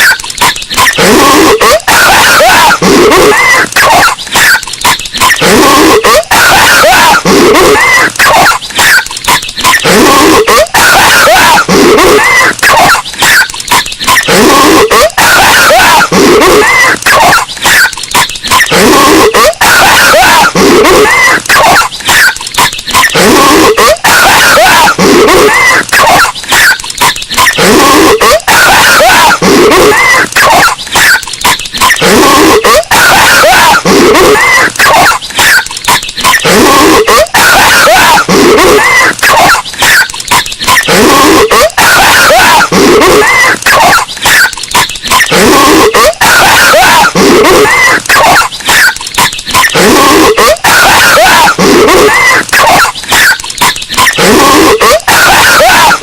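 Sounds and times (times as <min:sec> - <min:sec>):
distorted cartoon coughing: 0:00.0 - 0:56.0.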